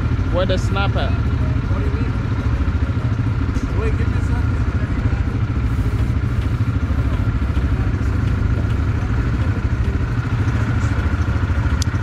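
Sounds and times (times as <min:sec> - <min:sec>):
quad bike engine idling: 0:00.0 - 0:12.0.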